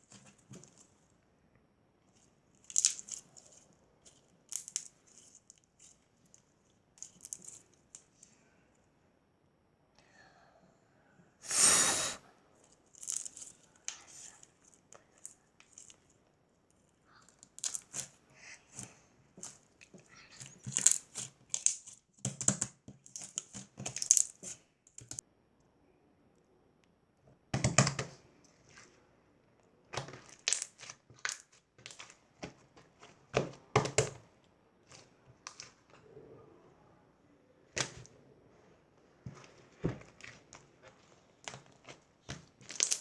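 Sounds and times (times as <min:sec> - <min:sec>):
crinkling and rustling: 0:00.0 - 0:01.2, 0:02.0 - 0:08.4, 0:12.6 - 0:25.2, 0:29.6 - 0:36.1, 0:37.7 - 0:43.0.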